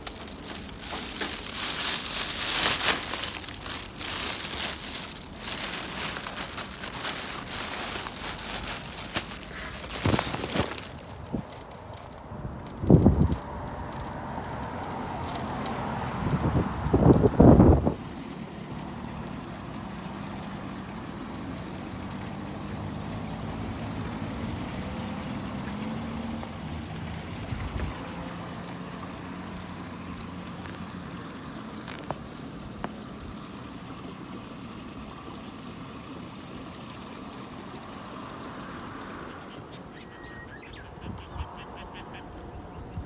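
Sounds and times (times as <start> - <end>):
flowing water: 0.0 - 11.3.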